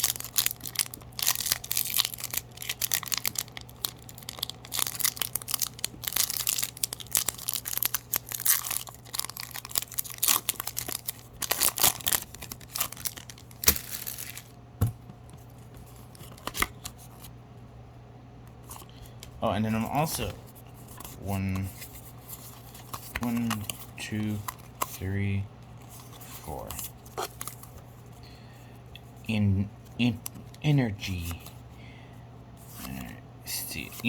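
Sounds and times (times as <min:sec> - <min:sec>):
foil wrapper tearing and crinkling: 0:00.0 - 0:14.6.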